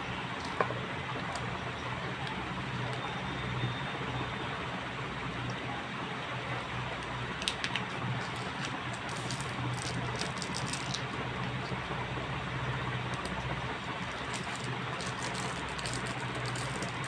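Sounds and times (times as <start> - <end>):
rustling of things handled: 7.4 - 11.8, 13.1 - 17.0.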